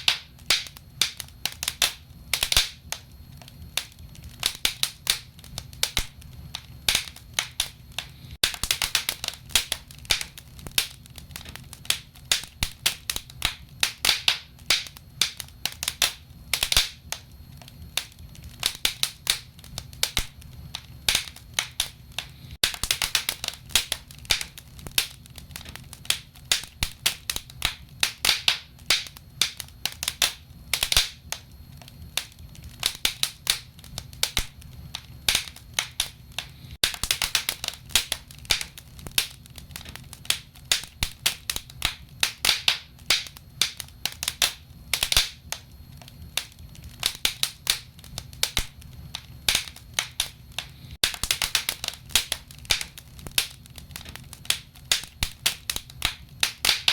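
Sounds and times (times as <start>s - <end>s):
low rumble of flames: 0.0s - 56.9s
wood fire crackling and popping: 0.0s - 56.9s.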